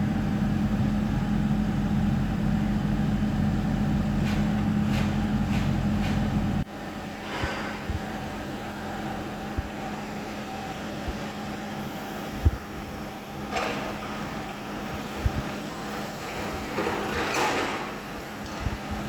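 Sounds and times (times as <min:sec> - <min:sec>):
machine engine running: 0:00.0 - 0:14.1.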